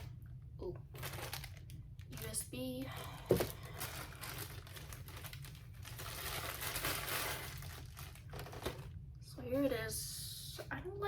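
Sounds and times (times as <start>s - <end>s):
plastic and cardboard rustling: 0.9s - 9.0s.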